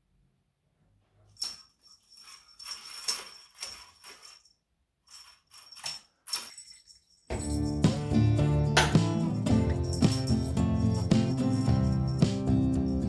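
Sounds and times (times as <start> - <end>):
small bell jingling: 1.3 - 13.0
strummed guitar music: 7.4 - 13.0.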